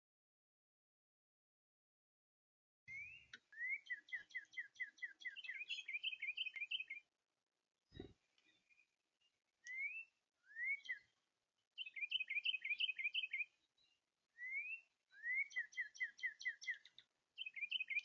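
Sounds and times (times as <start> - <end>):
bird singing whistled phrases: 2.9 - 7.0, 9.7 - 11.1, 11.8 - 13.6, 14.4 - 18.0.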